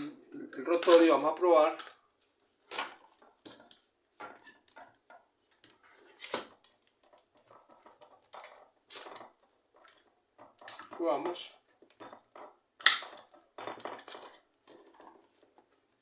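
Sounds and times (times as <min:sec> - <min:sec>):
metal parts clicking and knocking: 0:12.8 - 0:15.2.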